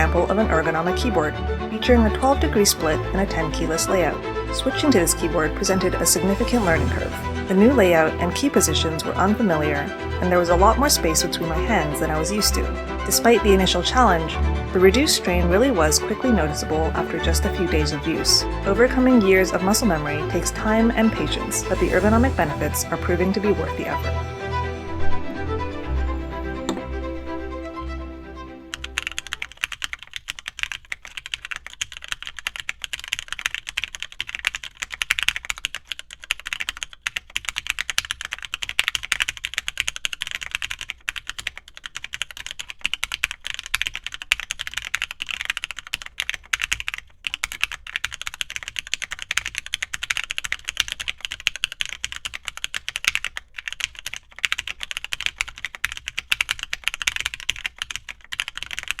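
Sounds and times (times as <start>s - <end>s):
fast typing on mechanical keyboard: 28.8s - 59.0s.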